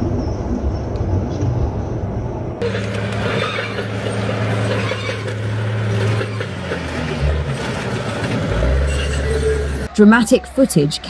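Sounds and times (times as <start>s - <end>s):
outdoor noise: 0.0s - 11.0s
vehicle engine humming: 2.6s - 9.9s.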